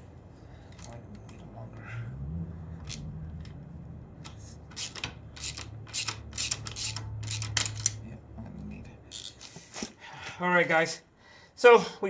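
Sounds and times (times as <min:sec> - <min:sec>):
metal tools clicking and scraping: 0:00.6 - 0:01.5, 0:04.2 - 0:08.0, 0:09.1 - 0:09.6.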